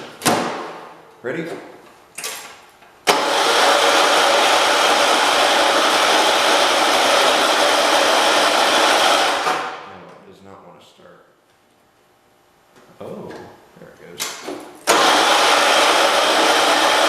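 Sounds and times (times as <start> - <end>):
electric starter cranking engine: 3.0 - 9.8, 14.8 - 17.0.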